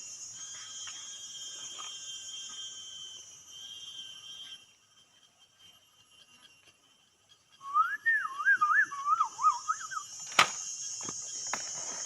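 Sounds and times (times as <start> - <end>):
warbling whistle: 0.3 - 6.7, 7.5 - 10.2.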